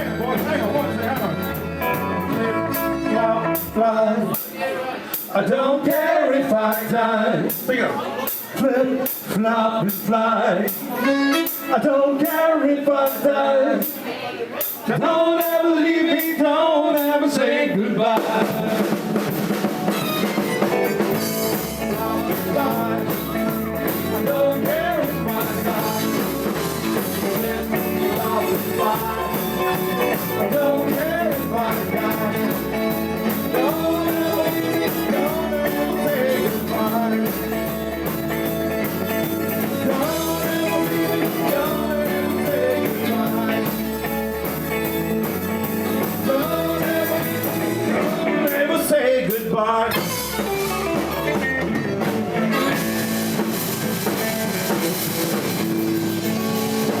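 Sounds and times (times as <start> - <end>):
bass line: 0.0 - 4.3, 18.0 - 57.0
sliding lead guitar line: 0.0 - 4.4, 18.3 - 49.2, 49.9 - 57.0
blues rock band playing: 0.0 - 14.0, 14.6 - 57.0
drums: 0.0 - 57.0.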